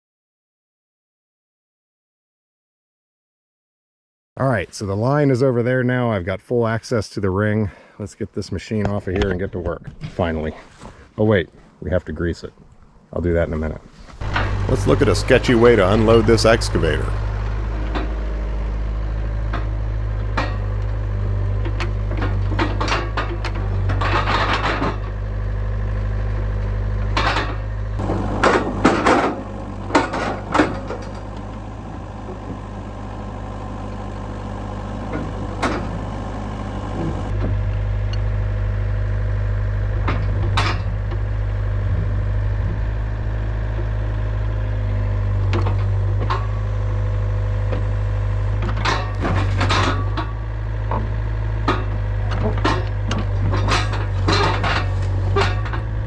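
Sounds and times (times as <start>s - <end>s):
metal clanks from tracks: 14.2s - 17.3s, 28.0s - 37.3s
diesel engine running: 14.2s - 17.6s, 28.0s - 37.3s.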